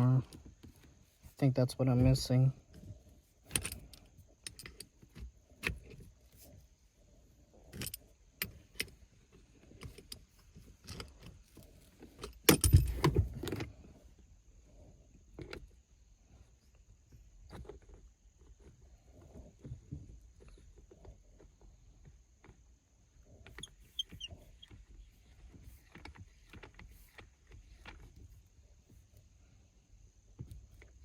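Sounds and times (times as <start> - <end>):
shift knob clicking and rattling: 3.5 - 6.1, 9.8 - 13.7.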